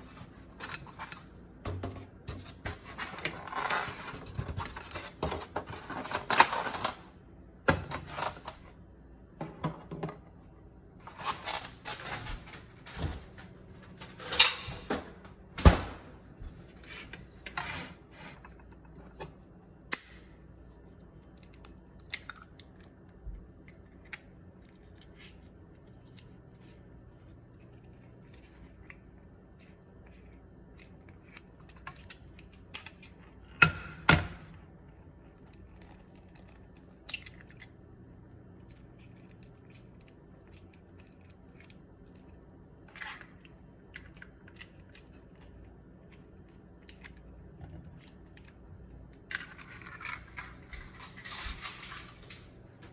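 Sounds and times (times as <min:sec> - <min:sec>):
kitchen utensils and dishes clinking: 0:14.0 - 0:15.1, 0:49.4 - 0:52.6.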